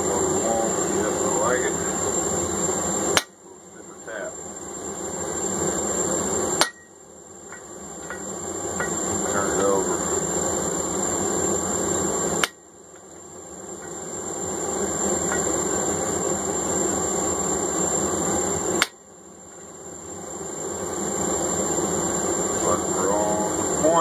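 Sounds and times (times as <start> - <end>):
forge rushing noise: 0.0 - 3.2, 8.2 - 12.5, 20.4 - 24.0.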